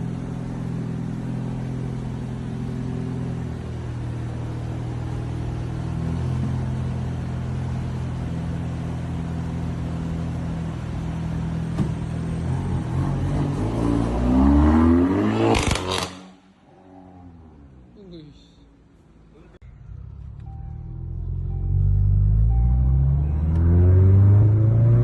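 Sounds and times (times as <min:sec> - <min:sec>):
car engine revving: 0:12.4 - 0:17.9, 0:19.7 - 0:25.0
exhaust cracks: 0:15.3 - 0:16.4.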